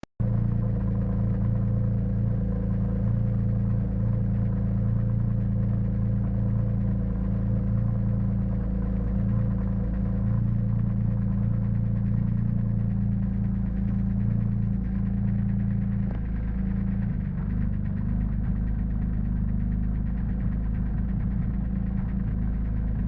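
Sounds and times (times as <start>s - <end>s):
engine idling roughly: 0.2s - 23.0s.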